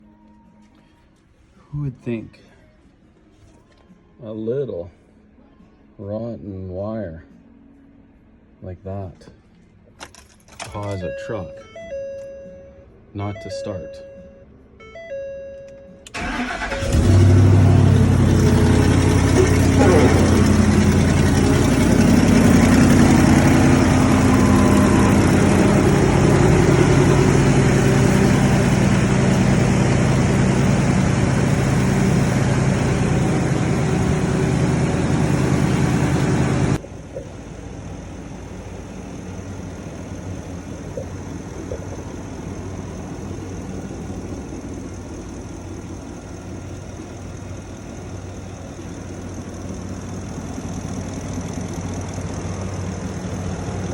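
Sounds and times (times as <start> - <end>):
pickup engine idling: 16.1 - 53.9.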